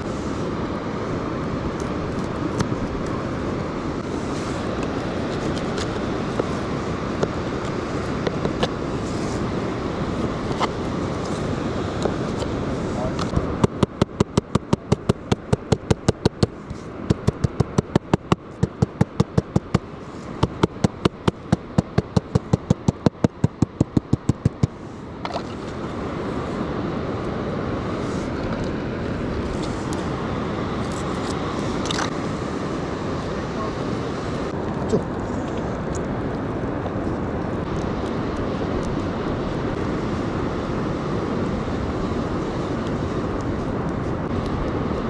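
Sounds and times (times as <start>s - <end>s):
surf: 0.0s - 45.0s
sharp rapid clicking: 20.4s - 24.8s.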